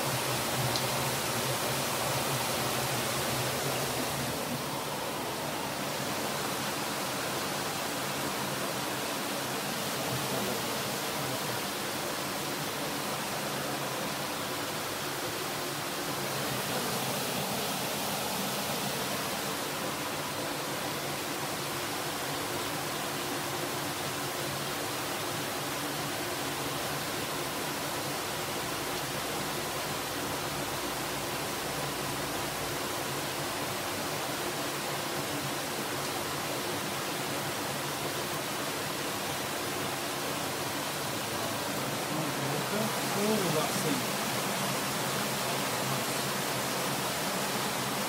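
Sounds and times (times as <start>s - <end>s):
river water rushing: 0.0s - 48.0s.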